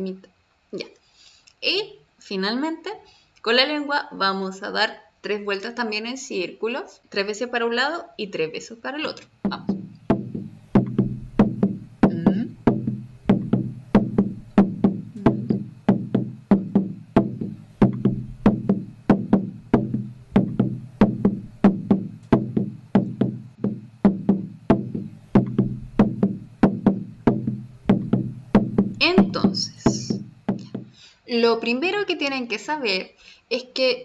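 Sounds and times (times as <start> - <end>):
drum struck in steady beat: 9.2 - 31.0.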